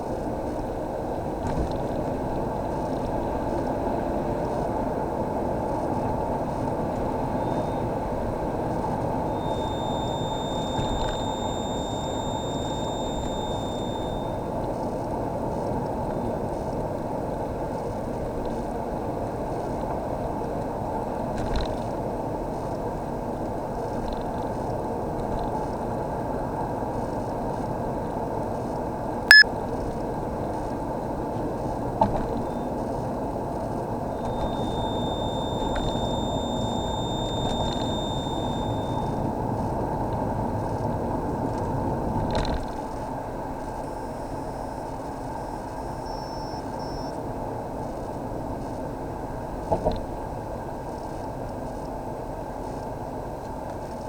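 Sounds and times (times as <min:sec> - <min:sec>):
high-pitched dashboard whine: 0:02.6 - 0:16.7, 0:34.0 - 0:41.8, 0:42.4 - 0:47.2
car cabin and road noise: 0:03.1 - 0:14.3, 0:34.2 - 0:39.5.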